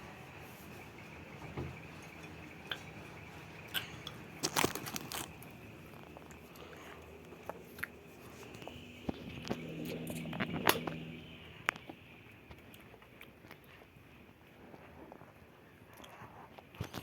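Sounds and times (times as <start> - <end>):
objects clicking and knocking: 3.6 - 11.1.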